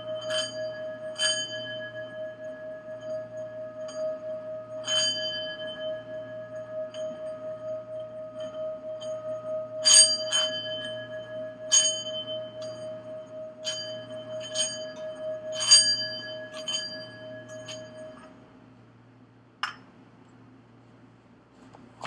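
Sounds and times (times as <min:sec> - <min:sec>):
singing bowl ringing: 0:00.0 - 0:18.3
bright bell strikes: 0:08.4 - 0:18.3.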